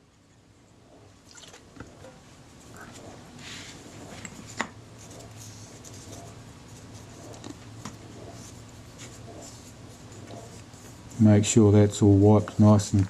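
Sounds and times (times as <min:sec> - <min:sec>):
low steady hum: 0:00.0 - 0:13.0
light rubbing: 0:02.0 - 0:11.7.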